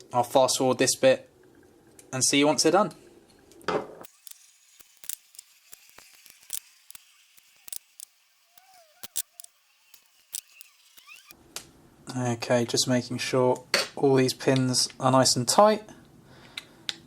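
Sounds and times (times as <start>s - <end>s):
small metal clicks and ticks: 4.0s - 11.4s.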